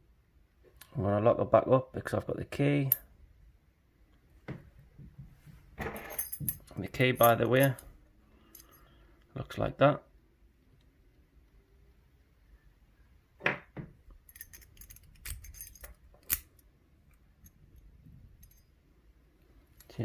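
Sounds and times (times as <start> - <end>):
key and padlock jingling: 6.0 - 7.9, 14.2 - 16.6, 18.3 - 18.7.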